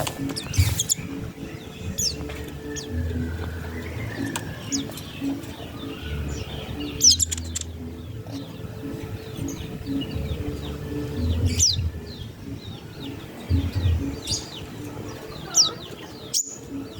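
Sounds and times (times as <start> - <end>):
high bird chirps and whistles: 0.0 - 7.8.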